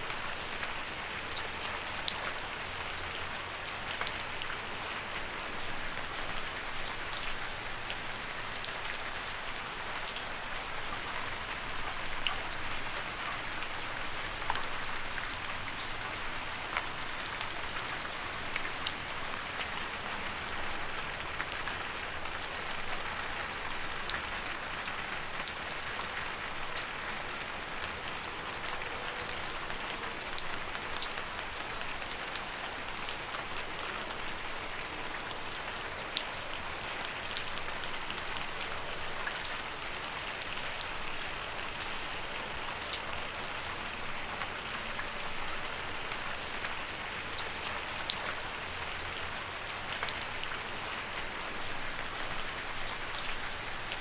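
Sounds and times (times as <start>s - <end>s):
raindrops ticking on a surface: 0.0s - 54.0s
steady rain hiss: 0.0s - 54.0s.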